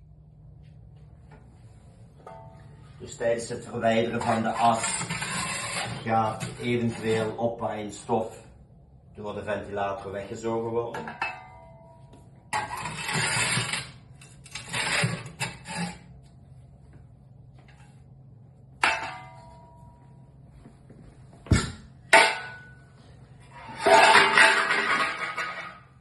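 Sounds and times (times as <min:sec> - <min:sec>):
metal tools scraping ash: 0:04.2 - 0:07.4, 0:12.6 - 0:16.1.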